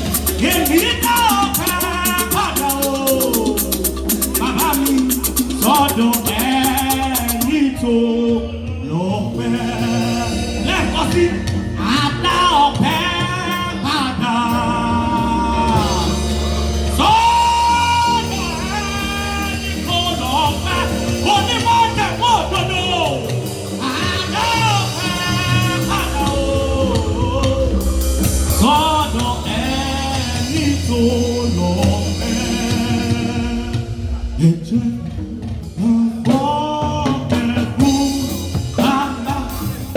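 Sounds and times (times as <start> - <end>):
youth choir singing: 0.0 - 22.2, 22.9 - 33.9
instrumental accompaniment: 0.0 - 39.9
steady bass line: 0.0 - 39.9.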